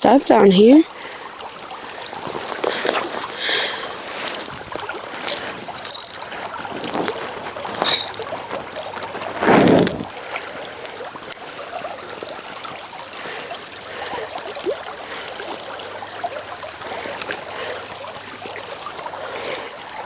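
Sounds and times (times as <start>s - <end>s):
stream water running: 0.0s - 20.0s
faint clicks: 1.4s - 10.2s
loud rustle: 2.0s - 10.2s.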